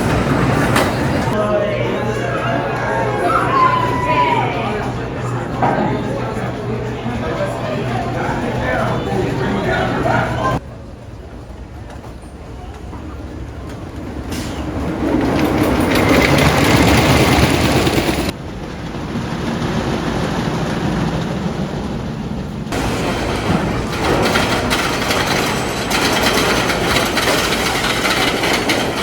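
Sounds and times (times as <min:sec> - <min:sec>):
rushing wind: 0:00.0 - 0:01.4, 0:13.2 - 0:29.0
roller coaster rumbling and clattering: 0:00.0 - 0:29.0.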